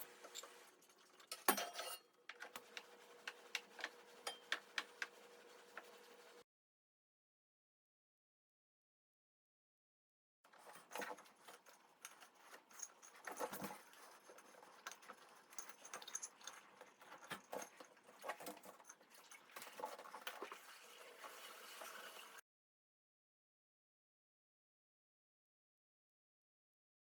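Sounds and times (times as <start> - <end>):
hands clicking tapping and scraping: 2.3 - 6.2.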